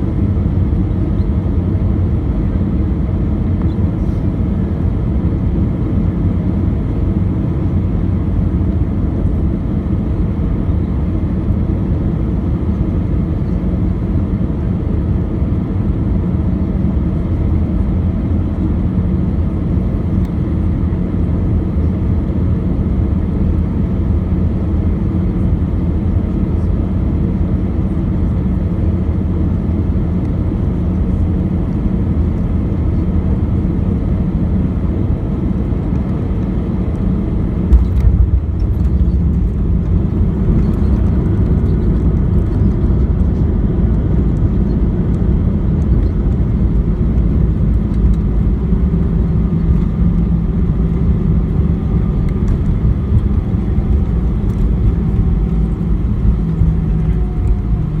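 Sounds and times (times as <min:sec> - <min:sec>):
aircraft cabin rumble: 0:00.0 - 0:58.0
wheels touching down thump: 0:37.7 - 0:41.0.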